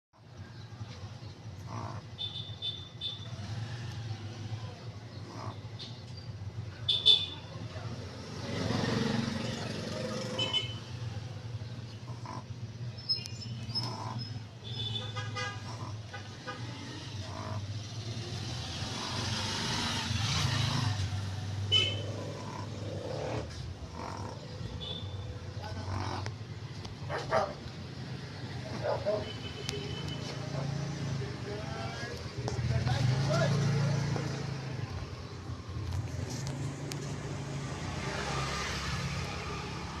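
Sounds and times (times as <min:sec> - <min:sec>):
puppy snoring: 0:22.1 - 0:24.6.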